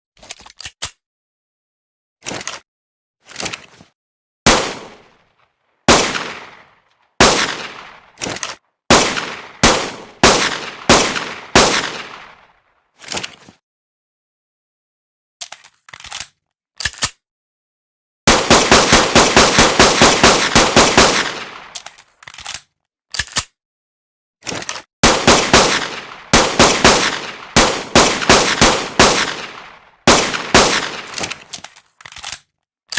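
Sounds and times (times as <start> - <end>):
synthetic gunshots: 5.9 - 6.6, 7.2 - 8.1, 8.9 - 12.4, 18.3 - 21.7, 25.0 - 31.5.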